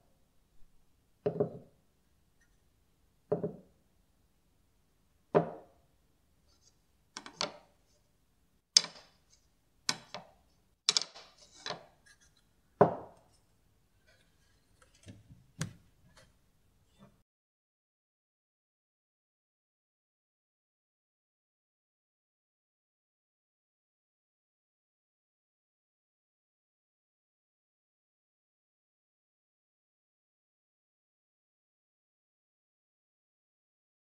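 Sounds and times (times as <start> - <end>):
wooden knocks on hard surface: 1.3 - 1.7, 3.3 - 3.7, 5.4 - 5.7, 12.8 - 13.2.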